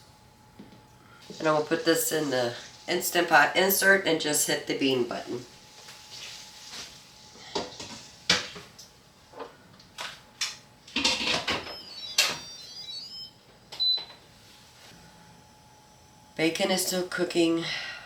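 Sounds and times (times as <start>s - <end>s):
high beep: 11.7s - 14.1s
electronic chime notes: 11.8s - 14.0s.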